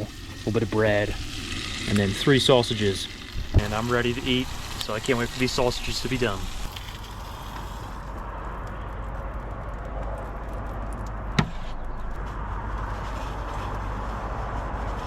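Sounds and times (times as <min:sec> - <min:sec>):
sausages sizzling: 0:00.0 - 0:08.5
faint crackles: 0:00.0 - 0:15.0.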